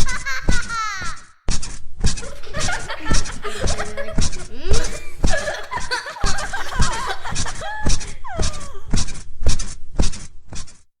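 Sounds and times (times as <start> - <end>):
children laughing and squealing: 0.0 - 1.3, 2.2 - 8.9
bed springs squeaking: 0.0 - 10.9
mattress thumping: 1.8 - 10.2.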